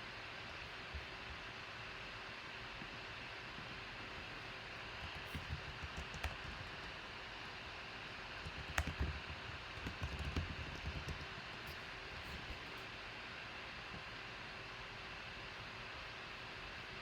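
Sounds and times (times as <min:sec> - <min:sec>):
light clicks and taps: 0:05.0 - 0:07.0, 0:08.4 - 0:12.8.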